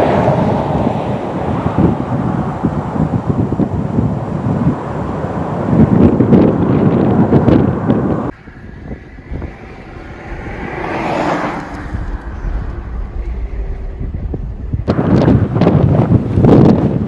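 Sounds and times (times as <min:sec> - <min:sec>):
wind buffeting microphone: 0:00.0 - 0:17.0
rushing sound: 0:08.3 - 0:16.5
low rumble: 0:08.3 - 0:16.8.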